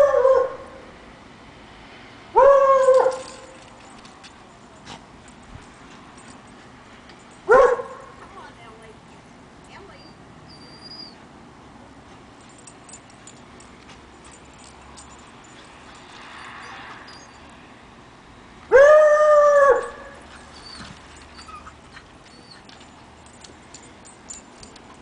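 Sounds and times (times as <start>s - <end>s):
dog bark-howl: 0.0s - 0.6s, 18.7s - 20.2s.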